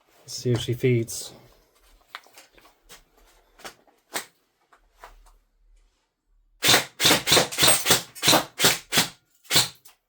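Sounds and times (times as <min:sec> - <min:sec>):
airsoft gun shots: 0:06.6 - 0:09.8.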